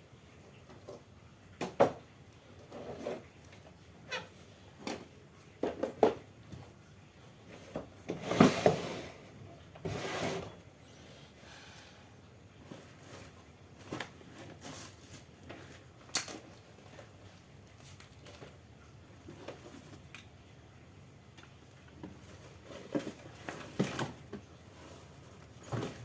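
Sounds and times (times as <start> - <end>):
short rustling scrapes: 7.6 - 10.6.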